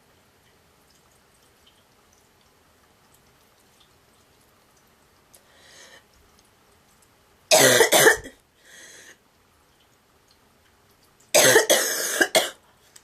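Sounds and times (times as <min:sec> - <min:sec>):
woman coughing: 0:07.5 - 0:08.4, 0:11.4 - 0:12.6.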